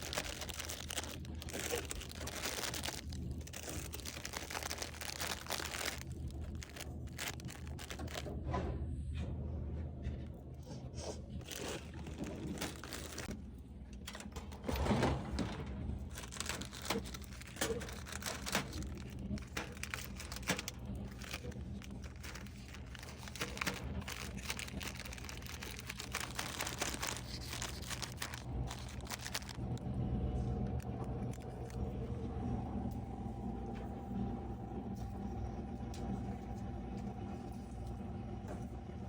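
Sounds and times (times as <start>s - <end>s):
plastic packaging crinkling: 0.0s - 8.3s, 11.3s - 13.4s, 16.0s - 29.8s.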